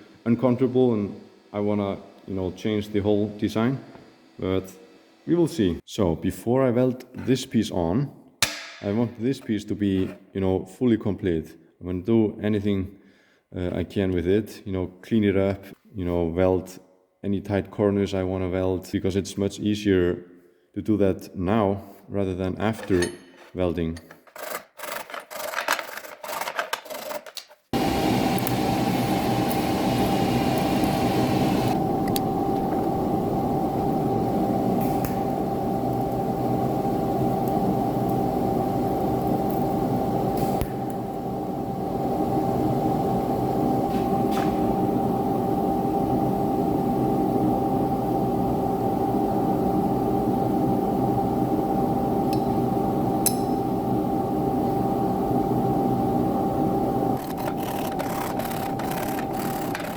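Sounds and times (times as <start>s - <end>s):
power tool whining: 57.1s - 59.9s
steel being filed: 57.2s - 59.9s.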